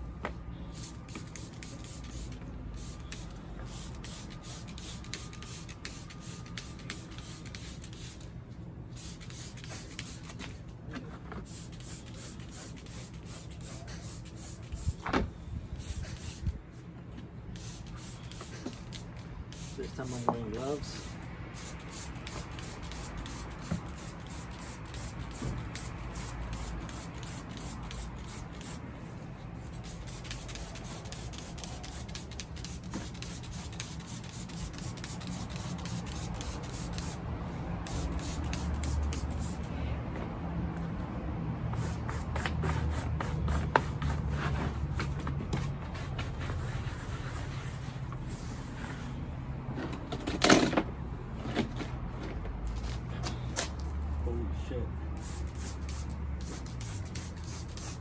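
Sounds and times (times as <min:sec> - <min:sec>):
spray bottle squirting: 0:00.7 - 0:08.3, 0:09.0 - 0:10.5, 0:11.4 - 0:15.0, 0:17.6 - 0:28.8, 0:29.6 - 0:37.2, 0:37.8 - 0:39.7, 0:41.8 - 0:49.0, 0:55.2 - 0:58.0.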